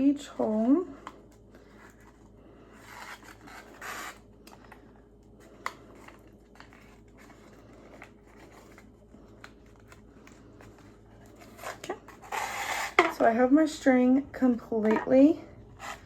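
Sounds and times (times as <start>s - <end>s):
paper cup rustling scrapes: 9.6s - 13.2s.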